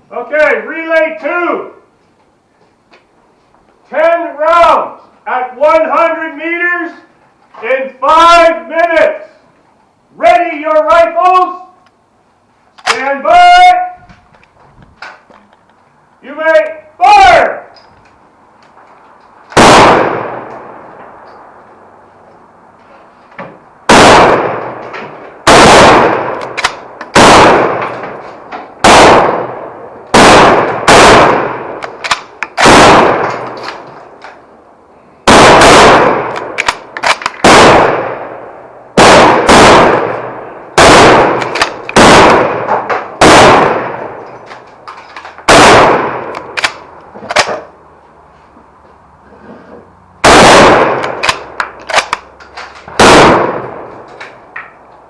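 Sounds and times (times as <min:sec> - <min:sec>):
rifle shots: 0:19.5 - 0:20.7, 0:23.9 - 0:28.1, 0:28.8 - 0:33.8, 0:35.2 - 0:38.3, 0:39.0 - 0:44.2, 0:45.4 - 0:47.7, 0:50.2 - 0:52.3, 0:53.0 - 0:53.9.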